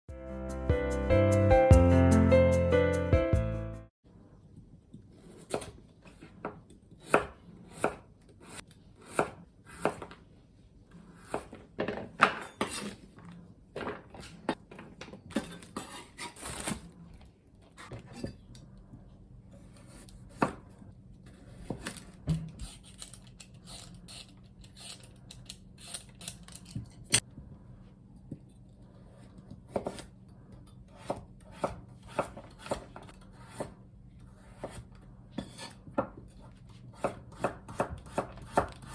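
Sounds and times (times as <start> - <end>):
knife chopping on cutting board: 5.2 - 10.2, 29.7 - 30.1, 31.0 - 33.8, 34.4 - 36.2, 36.9 - 38.9.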